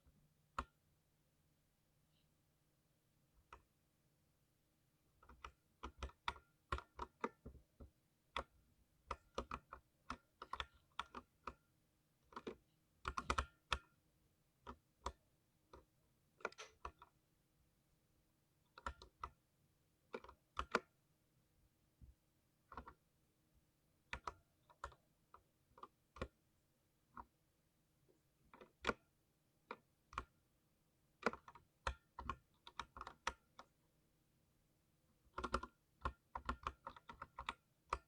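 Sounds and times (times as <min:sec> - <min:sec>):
mechanical keyboard keystroke clicks: 0:35.3 - 0:38.0.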